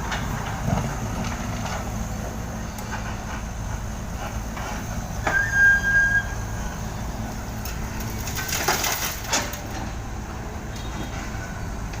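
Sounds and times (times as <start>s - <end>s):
diesel engine rumbling: 0.0s - 12.0s.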